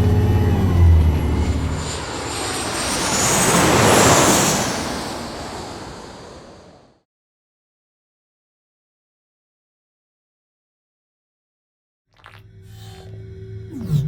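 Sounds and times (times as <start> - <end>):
passing engine rushing: 0.0 - 6.8.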